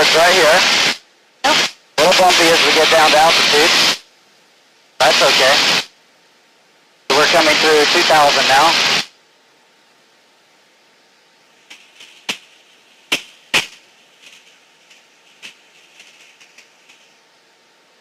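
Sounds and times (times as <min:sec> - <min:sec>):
faint steady hiss: 0:00.0 - 0:18.0
sharp clicks and pops: 0:11.7 - 0:12.5, 0:13.1 - 0:17.1.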